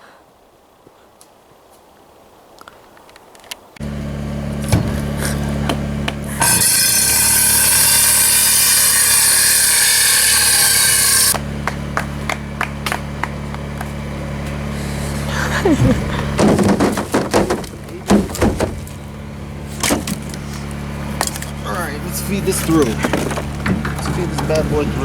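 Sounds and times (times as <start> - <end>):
small petrol engine running: 3.8 - 25.0
machine cutting through wood: 3.9 - 11.4, 19.8 - 25.0.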